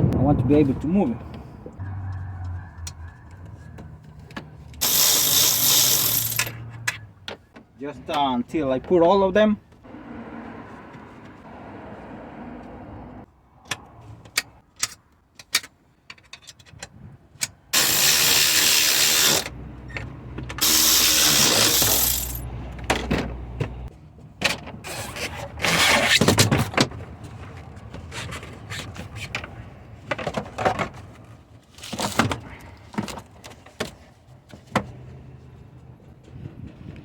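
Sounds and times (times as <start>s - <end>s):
hand-held power tool running: 4.8s - 6.5s, 17.8s - 19.5s, 20.6s - 22.4s
tools clicking and knocking: 13.7s - 19.5s.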